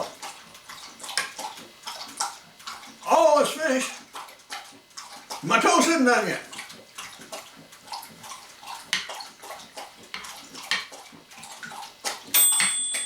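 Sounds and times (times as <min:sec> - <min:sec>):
dog lapping water: 0:00.0 - 0:12.4
toaster bell ringing: 0:12.4 - 0:13.0.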